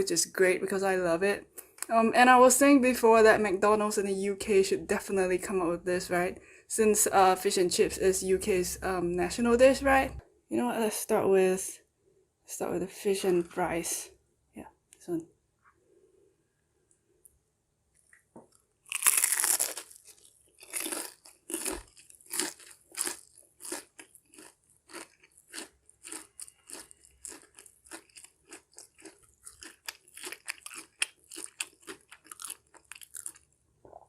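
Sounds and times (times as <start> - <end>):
close-up crunchy chewing: 18.1 - 33.6
crunchy bite into fried fish: 18.9 - 33.5.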